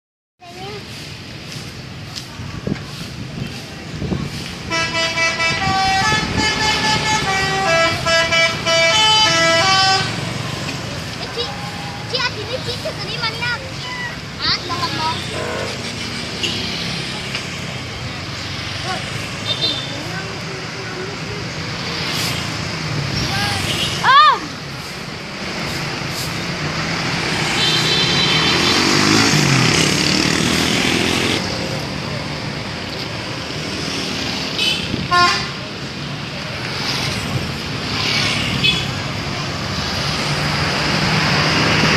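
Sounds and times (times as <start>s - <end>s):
musical bus horn tune: 4.7s - 10.2s, 15.3s - 15.8s, 34.6s - 35.6s.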